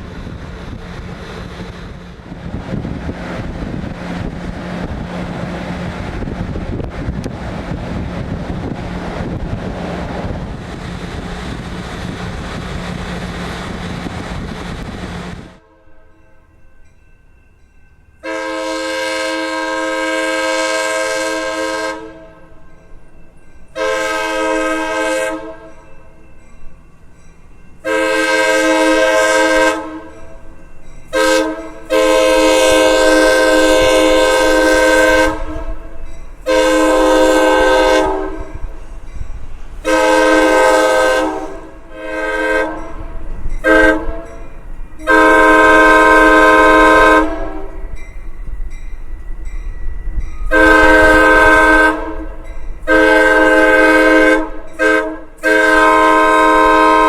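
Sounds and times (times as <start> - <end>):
train air horn blasts: 15.6 - 16.3, 18.2 - 22.6, 23.7 - 25.9, 27.8 - 30.4, 31.1 - 38.8, 39.8 - 48.0, 50.5 - 57.0.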